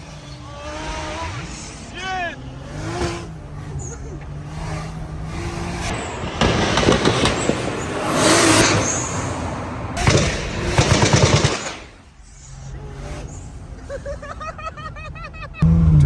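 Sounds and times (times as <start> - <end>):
car engine revving: 0.0 - 16.0
exhaust crackle: 0.0 - 16.0.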